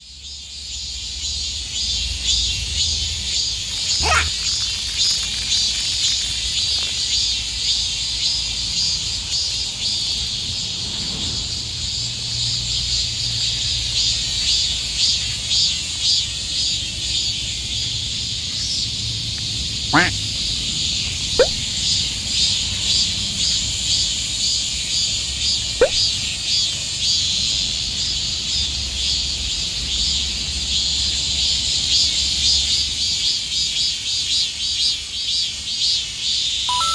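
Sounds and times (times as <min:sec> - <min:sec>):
cicadas buzzing: 0:03.9 - 0:04.7, 0:20.0 - 0:20.2
short falling chirp: 0:21.4 - 0:21.6, 0:25.8 - 0:26.1.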